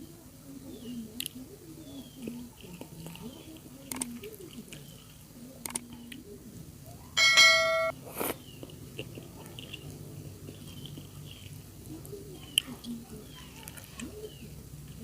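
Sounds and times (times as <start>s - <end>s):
wet chewing of noodles: 1.2s - 6.2s, 8.0s - 15.0s
loud ringing tone: 7.2s - 7.9s.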